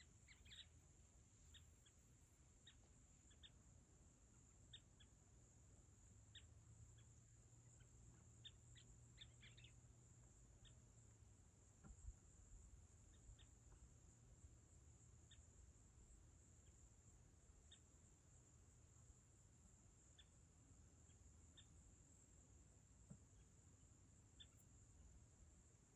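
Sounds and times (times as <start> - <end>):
short bird chirps: 0.0 - 0.8, 7.8 - 9.8, 24.4 - 24.8
crickets droning: 0.0 - 25.9.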